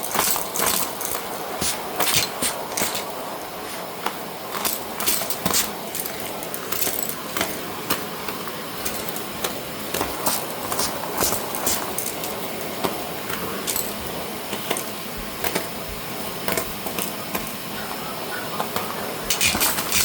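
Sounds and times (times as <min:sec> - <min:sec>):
debris clicking and rattling: 0:00.0 - 0:03.2, 0:04.0 - 0:12.7, 0:13.3 - 0:15.7, 0:19.2 - 0:20.0
vacuum cleaner running: 0:00.0 - 0:20.0.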